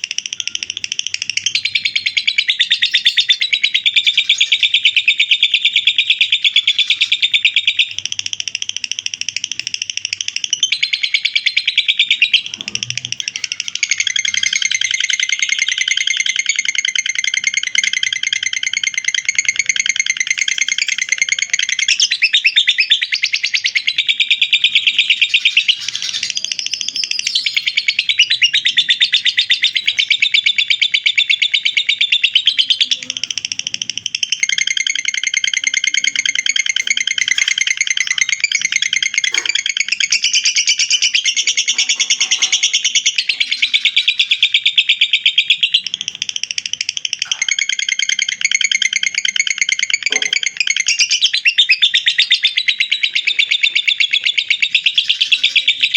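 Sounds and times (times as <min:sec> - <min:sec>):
bird chattering trill: 0:00.0 - 0:55.9.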